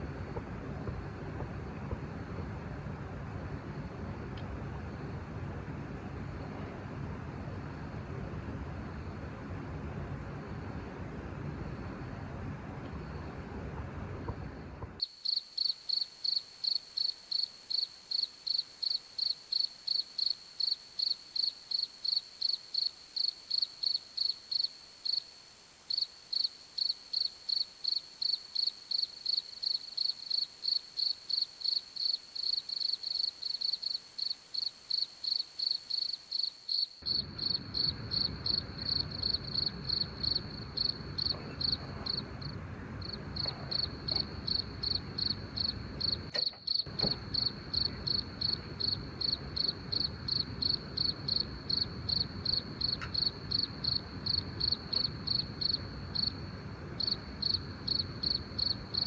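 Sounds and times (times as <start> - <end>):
low background hiss: 14.8 - 59.0
cricket chirping: 15.0 - 59.0.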